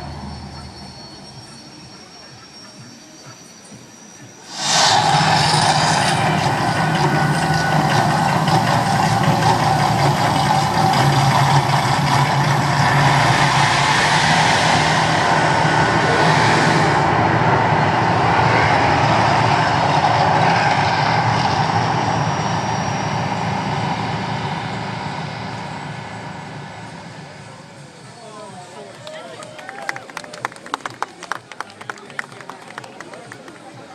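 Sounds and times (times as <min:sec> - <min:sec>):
high hiss: 0:00.0 - 0:19.2
loud rushing roar: 0:04.4 - 0:28.8.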